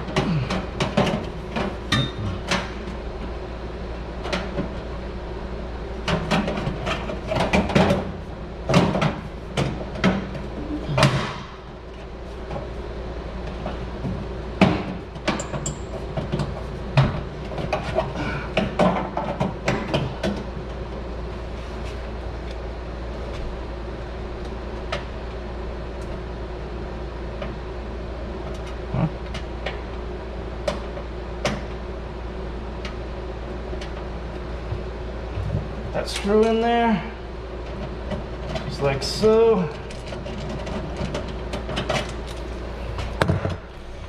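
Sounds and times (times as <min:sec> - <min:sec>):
steady low hum: 0:00.0 - 0:44.0
parts clattering and clicking: 0:39.8 - 0:44.0.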